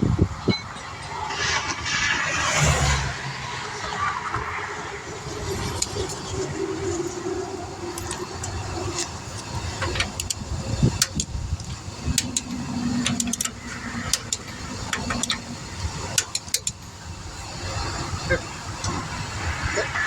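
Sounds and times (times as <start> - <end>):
highway traffic hum: 0.0 - 20.0
sharp clicks and knocks: 7.9 - 17.2.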